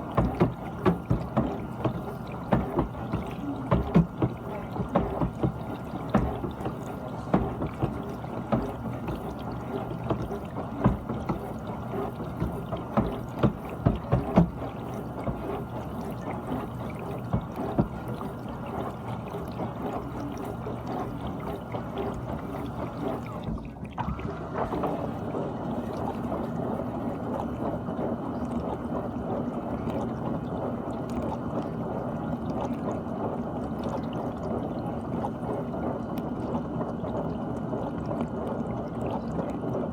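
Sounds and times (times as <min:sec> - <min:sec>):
dishwasher water spraying: 0:00.0 - 0:23.4
splashes and knocks: 0:00.0 - 0:27.8.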